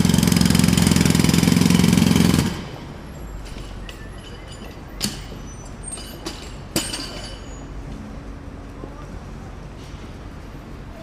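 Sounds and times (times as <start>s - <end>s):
jackhammer hammering: 0.0s - 2.9s
sharp clinks: 3.4s - 7.7s.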